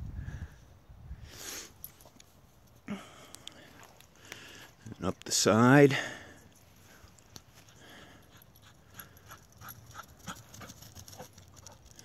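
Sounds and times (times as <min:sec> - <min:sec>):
dog breathing in quick puffs: 0:06.2 - 0:12.0.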